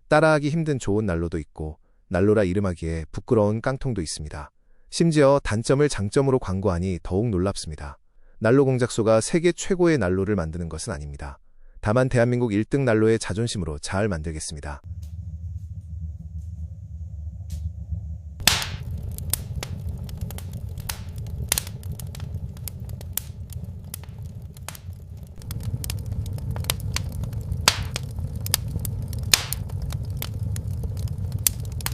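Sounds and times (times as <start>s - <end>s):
low rumble of burning fire: 14.8s - 31.9s
wood fire popping in a stove: 18.4s - 31.9s.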